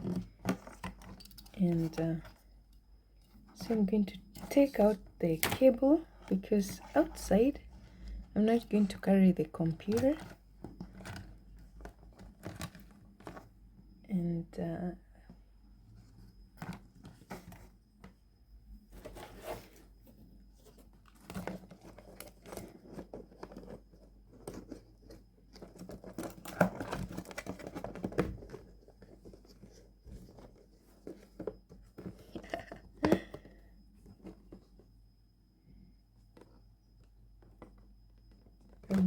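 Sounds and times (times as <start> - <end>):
plastic rustling: 18.8 - 34.8.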